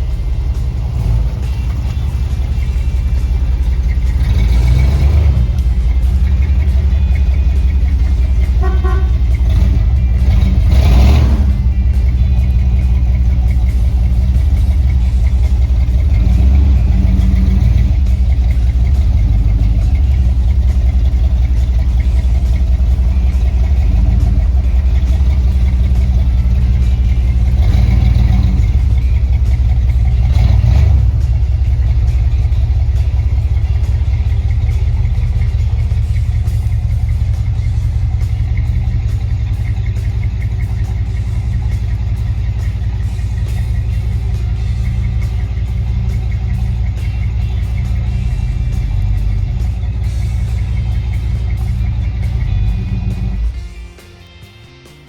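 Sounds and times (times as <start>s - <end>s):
car engine rumbling while driving: 0.0s - 53.8s.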